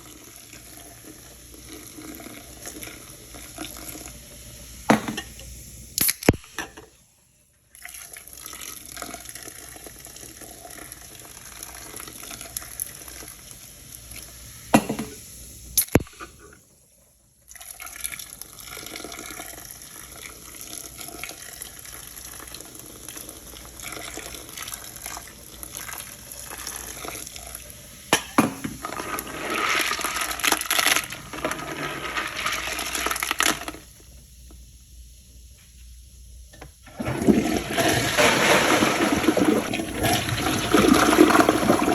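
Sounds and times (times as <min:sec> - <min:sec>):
water running and splashing: 0:36.9 - 0:41.9.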